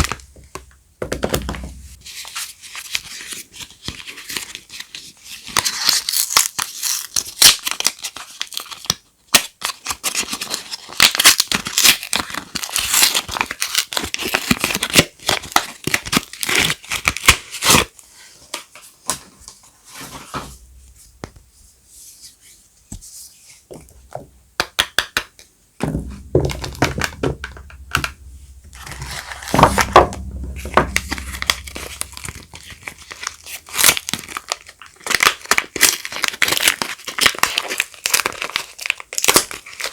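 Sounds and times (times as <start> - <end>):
wrapping crinkling and rustling: 2.0 - 20.6, 30.9 - 39.9
low rumble: 25.9 - 33.5.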